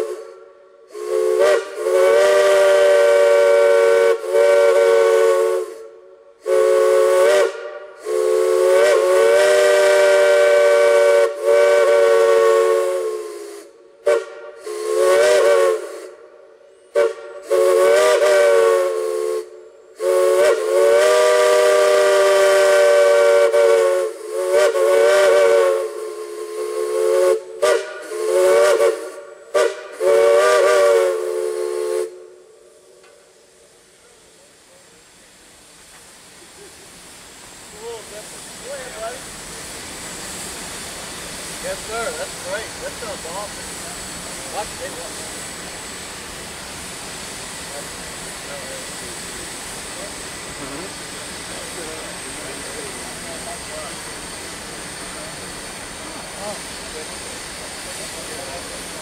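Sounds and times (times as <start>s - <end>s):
steam whistle blasts: 0.0s - 33.0s
steam hissing: 0.0s - 59.0s.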